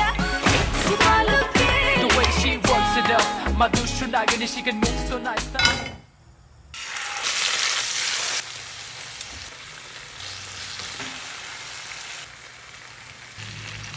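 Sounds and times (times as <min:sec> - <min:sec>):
chicken sizzling in hot oil: 0:06.8 - 0:13.9.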